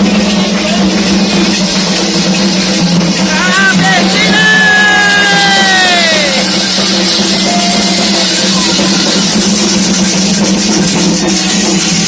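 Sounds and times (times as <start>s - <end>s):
ceremonial drums: 0.0s - 12.0s
voice crying out: 3.3s - 6.4s.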